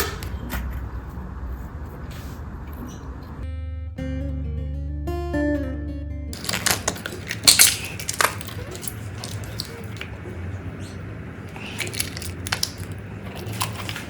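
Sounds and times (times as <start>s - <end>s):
slime squishing with sticky crackles: 6.4s - 14.0s.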